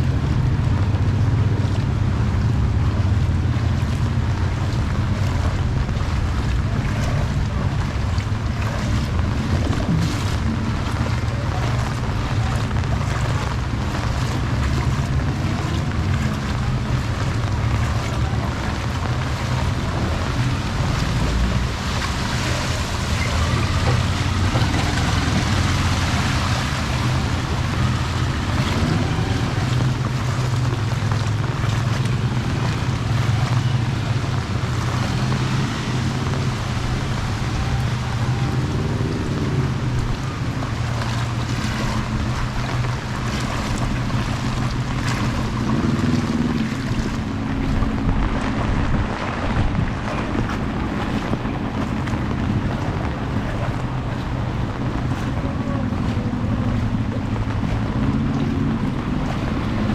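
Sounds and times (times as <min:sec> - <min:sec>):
heavy rain falling: 0:00.0 - 0:59.9
low rumble: 0:00.0 - 0:59.9
wind buffeting microphone: 0:00.0 - 0:59.9.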